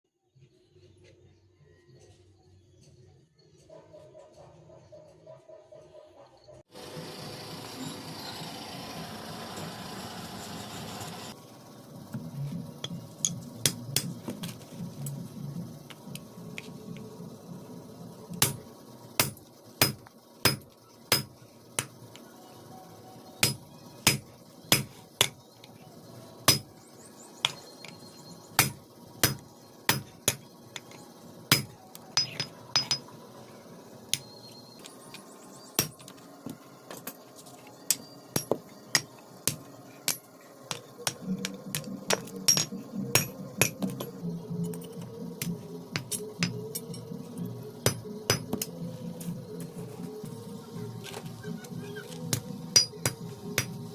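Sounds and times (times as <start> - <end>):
hammer striking iron on anvil: 12.8 - 14.2, 18.4 - 18.6, 19.2 - 22.0, 23.4 - 25.4, 26.5 - 26.7, 28.6 - 30.4, 31.5 - 33.1, 37.9 - 44.1, 45.4 - 47.0, 47.8 - 48.7, 52.3 - 53.8.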